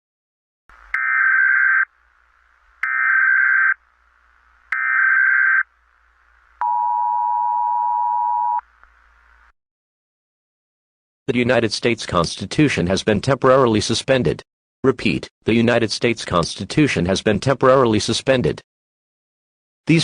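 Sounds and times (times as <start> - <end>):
data tone bursts: 2.8 - 3.8.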